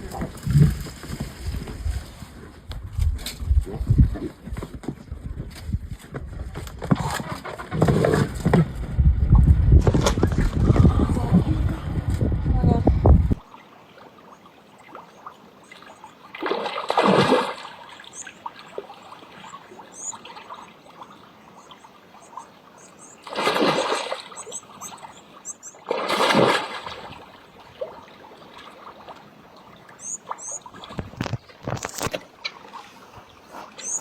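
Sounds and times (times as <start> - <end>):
water splashing: 13.3 - 34.0
faint high chirps: 19.9 - 20.8.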